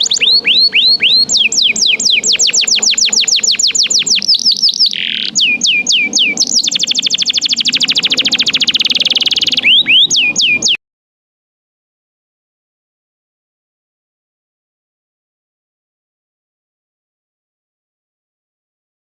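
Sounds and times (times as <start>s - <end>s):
canary singing: 0.0s - 10.8s.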